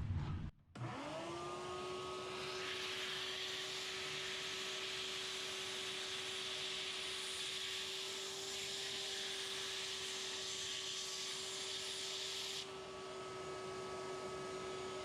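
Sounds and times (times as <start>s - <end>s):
shop vac motor whine: 0.8s - 15.0s.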